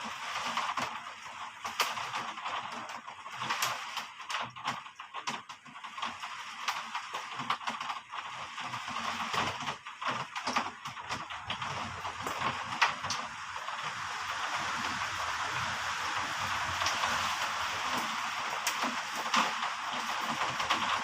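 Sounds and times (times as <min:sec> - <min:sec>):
raindrops tapping hard surface: 0:00.0 - 0:21.0
heavy rain hissing: 0:11.3 - 0:21.0.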